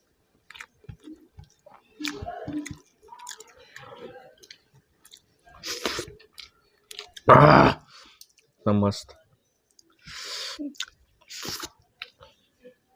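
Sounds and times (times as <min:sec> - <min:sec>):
wet chewing and smacking: 0:00.3 - 0:03.8, 0:04.4 - 0:05.3, 0:10.7 - 0:12.2.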